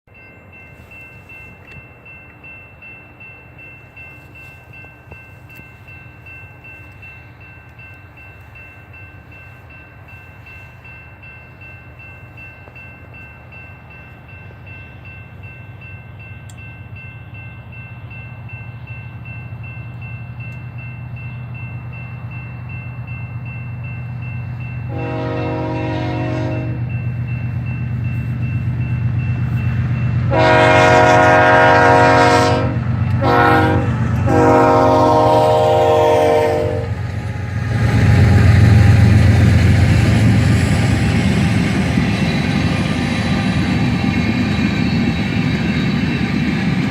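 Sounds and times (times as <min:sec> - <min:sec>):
freight train rumble: 0:00.1 - 0:46.9
train horn chord: 0:24.9 - 0:26.9, 0:30.3 - 0:39.0.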